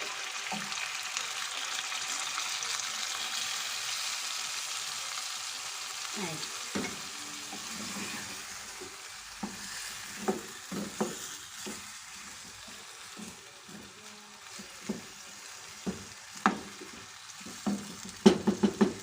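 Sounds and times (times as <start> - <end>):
chicken sizzling in a frying pan: 0.0 - 19.0
utensil scraping a pan: 6.8 - 12.6.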